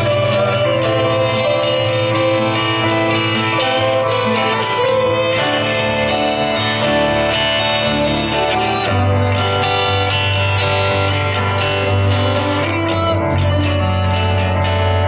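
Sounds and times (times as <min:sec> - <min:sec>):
bass guitar: 0:00.0 - 0:15.0
electric guitar: 0:00.0 - 0:15.0.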